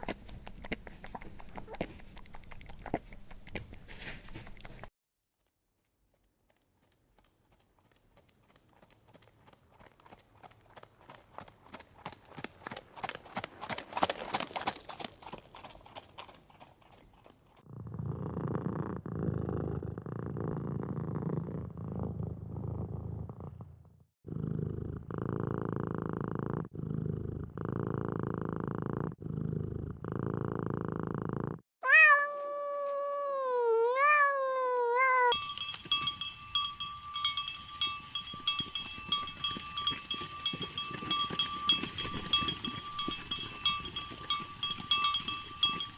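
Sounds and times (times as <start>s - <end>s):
cat purring: 17.7s - 31.6s
cat meowing: 31.8s - 35.4s.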